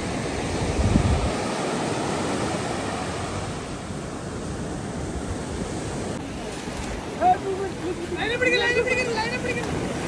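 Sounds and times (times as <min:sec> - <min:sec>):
wind rushing: 0:00.0 - 0:03.6
sea waves: 0:00.0 - 0:10.0
wind buffeting microphone: 0:00.0 - 0:10.0.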